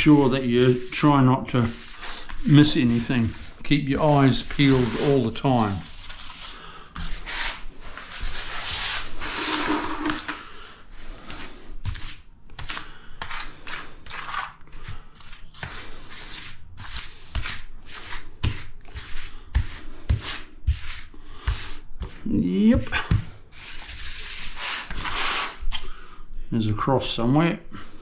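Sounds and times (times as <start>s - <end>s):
hand tool scraping ceramic tiles: 0.0s - 10.4s.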